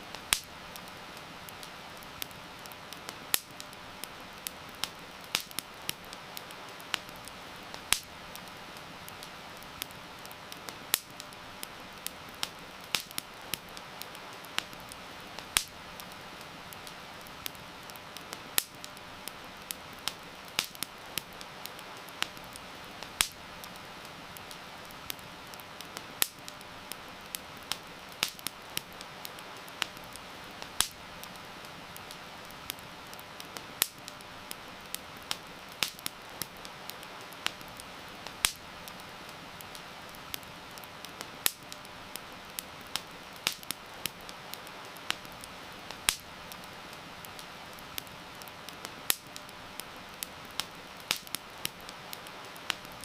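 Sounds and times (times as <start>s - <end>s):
campfire crackling and popping: 0.0s - 53.0s
rain hissing: 0.0s - 53.0s.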